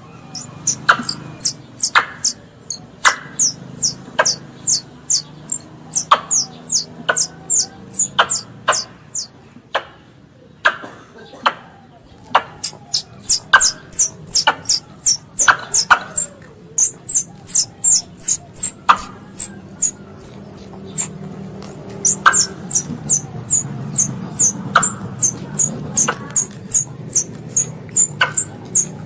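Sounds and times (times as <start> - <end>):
high-pitched falling chirps: 0.0 - 9.3, 12.6 - 21.1
sharp clicks: 0.3 - 9.3, 12.2 - 29.0.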